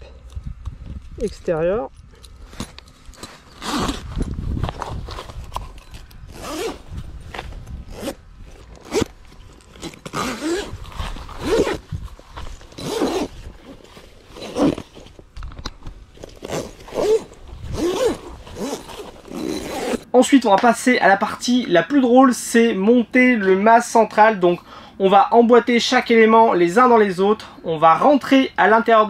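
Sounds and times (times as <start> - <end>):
heavy zip being pulled: 2.1 - 15.2, 16.2 - 20.1.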